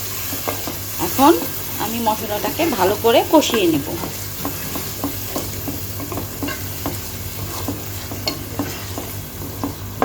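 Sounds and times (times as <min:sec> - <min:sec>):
paste sizzling in a pan: 0:00.0 - 0:10.0
spatula scraping a pan: 0:02.4 - 0:09.9.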